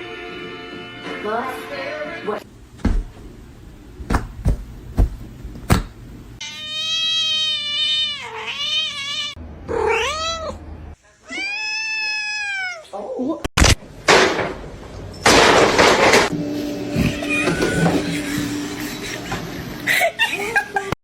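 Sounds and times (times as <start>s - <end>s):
cat meowing: 6.4s - 10.6s, 11.2s - 13.0s.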